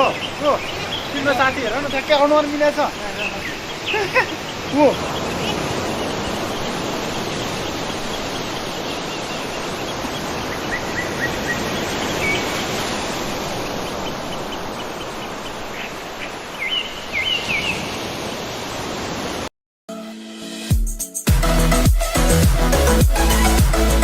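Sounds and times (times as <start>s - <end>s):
small bird chirping: 0.0s - 12.6s
waterfall rushing: 0.0s - 19.5s.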